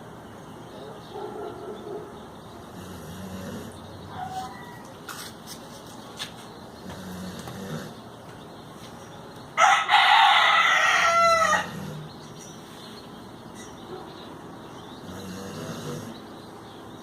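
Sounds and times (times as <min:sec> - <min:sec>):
faint low snoring breaths: 0:02.6 - 0:03.9, 0:06.8 - 0:08.1, 0:11.6 - 0:12.2, 0:15.0 - 0:16.3
rooster crowing: 0:09.6 - 0:12.0.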